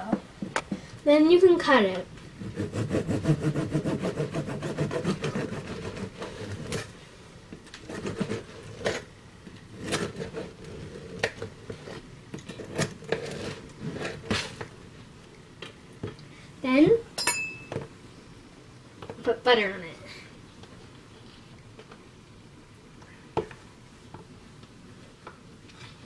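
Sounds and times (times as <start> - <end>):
knife sawing through bread: 2.4 - 6.9, 7.9 - 8.8
knife scrapes and knocks: 7.8 - 9.0.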